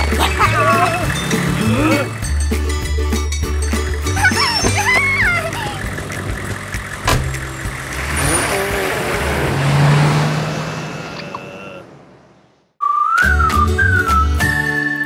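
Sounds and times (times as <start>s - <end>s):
vehicle rushing by: 0.0s - 2.3s, 4.5s - 12.7s.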